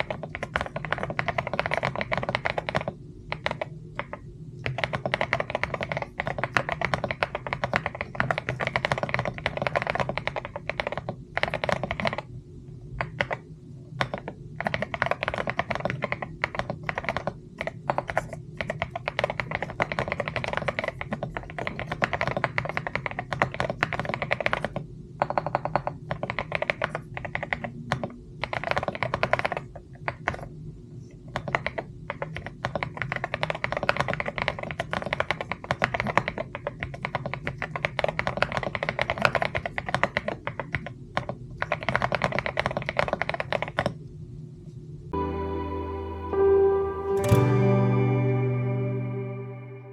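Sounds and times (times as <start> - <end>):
mechanical keyboard typing: 0.0 - 12.3, 14.0 - 30.4.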